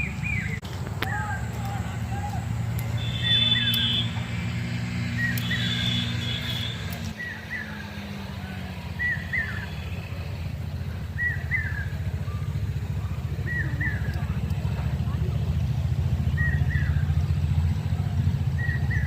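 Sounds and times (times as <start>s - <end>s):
engine low hum: 0.0s - 19.0s.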